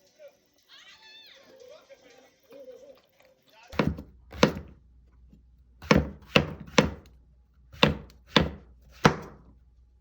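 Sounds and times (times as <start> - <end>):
knife chopping on wooden board: 3.8 - 4.8, 5.8 - 7.1, 7.7 - 9.5.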